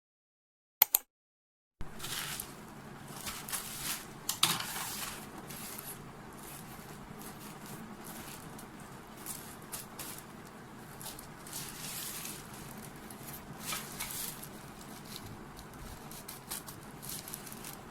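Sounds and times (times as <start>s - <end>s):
parcel rustling: 1.8s - 17.9s.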